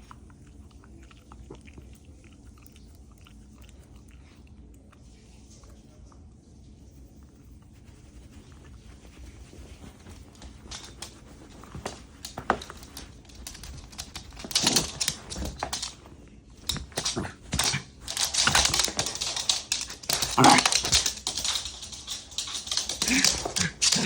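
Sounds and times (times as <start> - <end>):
dog claws clicking on hard floor: 8.0 - 24.0.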